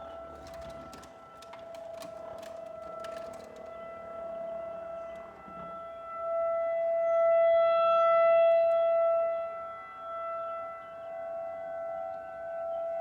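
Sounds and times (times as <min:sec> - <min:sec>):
warning siren steady tone: 0:00.0 - 0:13.0
higher siren tone: 0:04.5 - 0:13.0.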